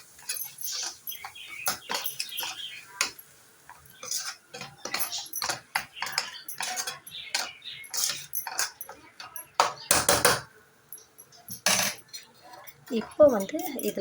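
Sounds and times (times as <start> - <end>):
utensil scraping a frying pan: 0.0 - 9.0.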